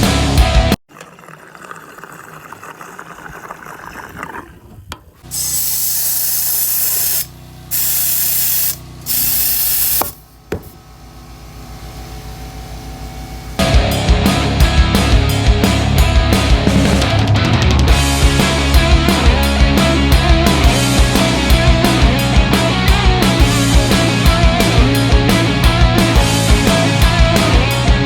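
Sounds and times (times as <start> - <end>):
music: 0.0 - 0.8, 13.6 - 28.0
air tool hissing: 5.2 - 13.6.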